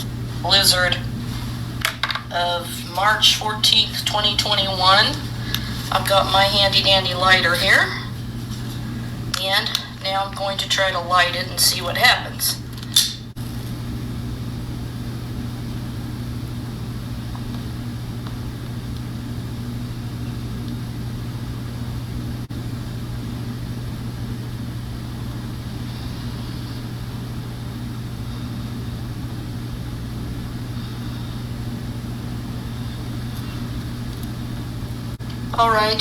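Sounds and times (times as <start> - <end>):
steady low hum: 0.0 - 36.0.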